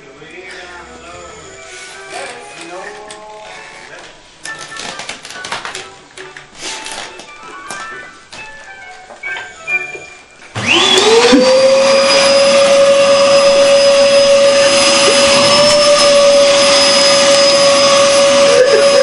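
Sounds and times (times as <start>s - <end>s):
vacuum cleaner motor: 10.5s - 19.0s.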